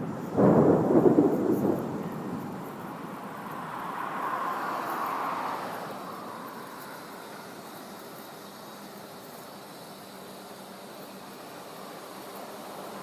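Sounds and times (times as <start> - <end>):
thunder rumble: 0.0 - 4.8
soft rushing hiss: 0.0 - 13.0.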